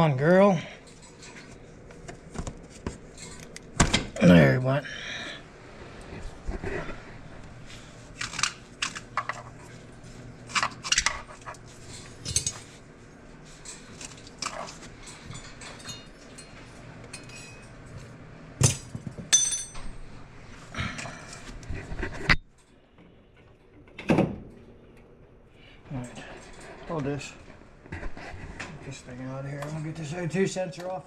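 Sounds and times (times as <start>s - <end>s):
metal tools clinking: 11.8s - 12.8s, 13.6s - 17.8s, 18.6s - 20.0s
ringing metallic clang: 19.3s - 19.9s.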